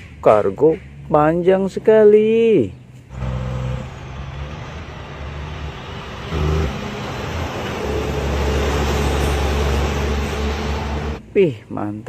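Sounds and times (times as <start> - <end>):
vehicle engine running: 3.1 - 11.2.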